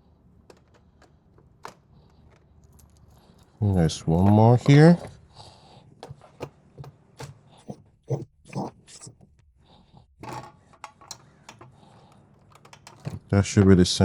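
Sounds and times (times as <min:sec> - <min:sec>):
hand tools clicking and knocking: 0:00.0 - 0:07.6, 0:10.2 - 0:13.8.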